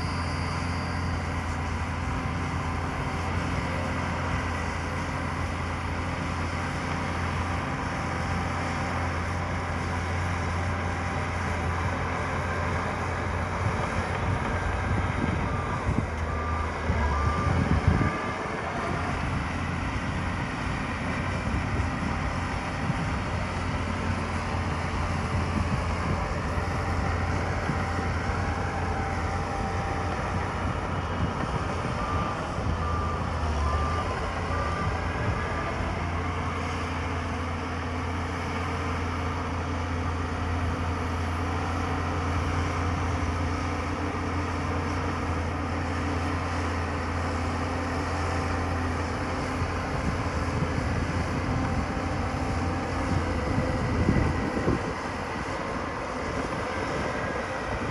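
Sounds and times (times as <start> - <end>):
reversing alarm beeping: 0.0 - 2.1, 12.4 - 23.3, 24.4 - 36.8
heavy diesel engine running: 0.0 - 57.9.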